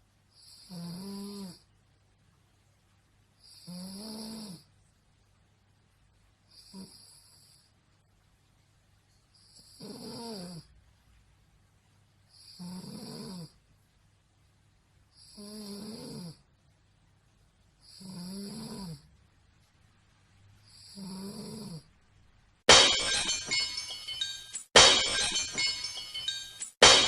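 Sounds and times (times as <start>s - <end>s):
woman snoring: 0.4s - 1.6s, 3.4s - 4.7s, 6.6s - 7.6s, 9.6s - 10.6s, 12.4s - 13.5s, 15.2s - 16.4s, 17.8s - 19.0s, 20.7s - 21.9s.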